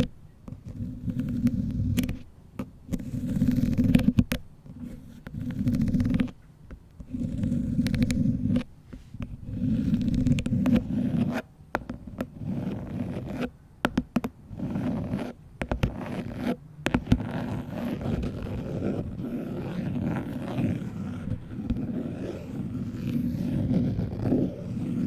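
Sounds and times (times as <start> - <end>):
fingernails scratching phone case: 0.0 - 6.4, 7.0 - 25.0
sharp taps: 13.8 - 14.4.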